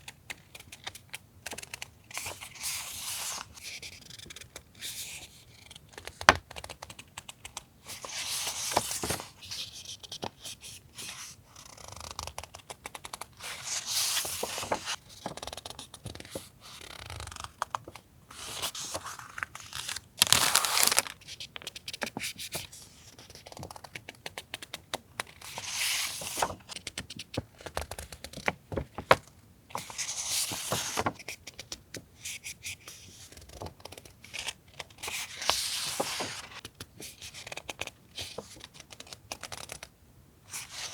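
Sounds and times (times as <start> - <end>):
paper rustling and crinkling: 7.9 - 11.3, 13.2 - 22.6, 25.4 - 31.3, 33.2 - 39.8.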